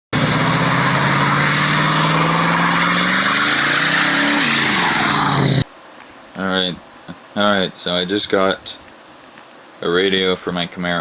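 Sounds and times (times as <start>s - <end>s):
car engine revving: 0.1s - 5.7s.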